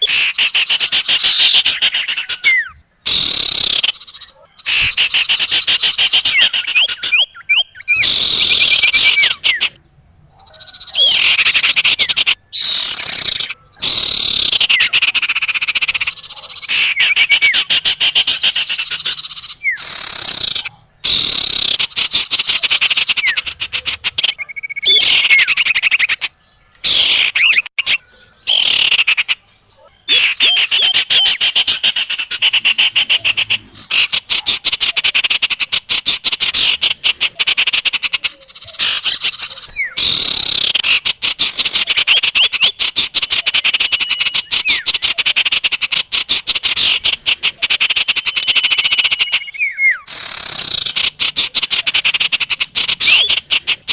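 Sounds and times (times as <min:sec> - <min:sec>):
bird up-slurred whistles: 0:00.0 - 0:09.8, 0:38.3 - 0:40.7, 0:41.4 - 0:45.2, 0:47.8 - 0:50.9, 0:53.0 - 0:53.4
songbird chattering trills: 0:00.0 - 0:53.9.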